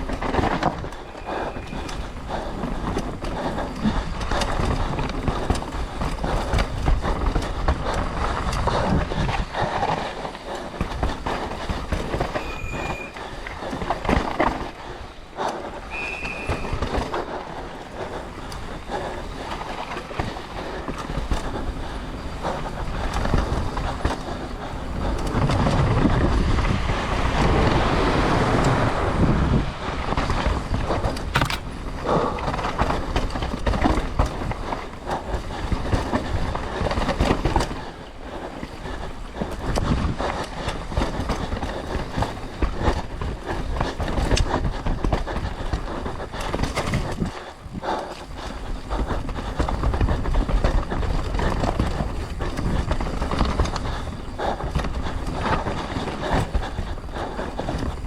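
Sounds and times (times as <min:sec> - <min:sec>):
tyres on dirt and rock: 0:00.0 - 0:29.3, 0:29.9 - 0:58.0
bike rattling and clattering: 0:00.0 - 0:58.0
brief high squeals: 0:12.4 - 0:13.2.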